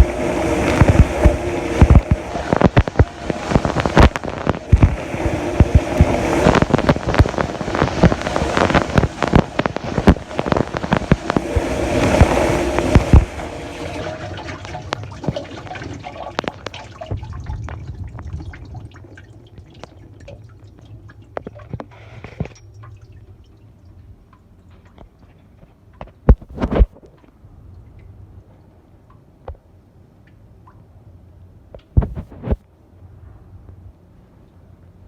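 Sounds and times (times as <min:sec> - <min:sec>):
dishwasher water rushing: 0:00.0 - 0:24.0
water dripping and trickling: 0:00.0 - 0:32.0.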